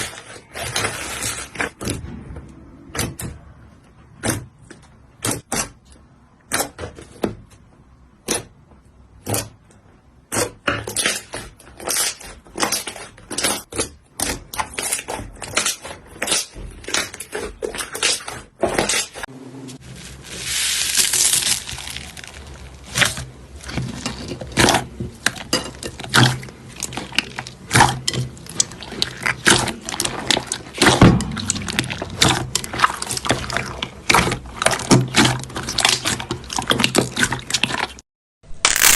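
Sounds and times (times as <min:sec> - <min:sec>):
slime crackling and squishing: 0:11.1 - 0:38.9
slime hissing: 0:19.8 - 0:23.1.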